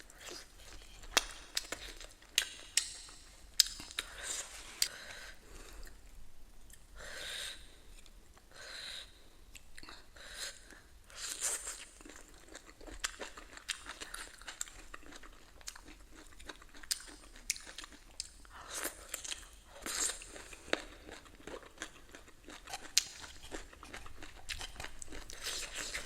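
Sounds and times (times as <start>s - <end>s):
chewing and crunching food: 0.1s - 6.1s, 9.5s - 26.0s.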